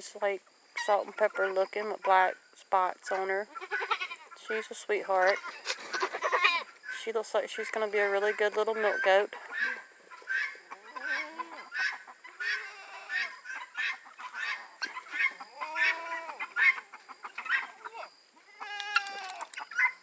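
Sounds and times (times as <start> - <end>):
chickens clucking and squawking: 0.0 - 20.0.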